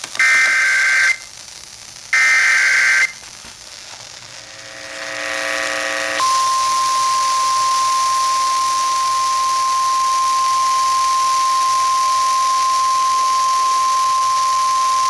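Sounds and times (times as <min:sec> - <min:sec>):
radio hiss: 0:00.0 - 0:08.1
steady high alarm tone: 0:02.2 - 0:03.1, 0:04.4 - 0:15.0.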